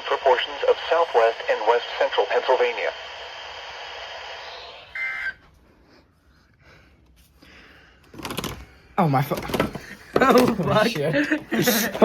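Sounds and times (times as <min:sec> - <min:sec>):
radio static hiss: 0:00.0 - 0:05.3.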